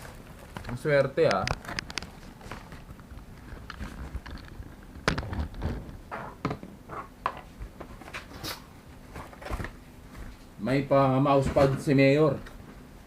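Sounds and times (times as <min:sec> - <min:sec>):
packaging rustling: 0:00.0 - 0:06.0.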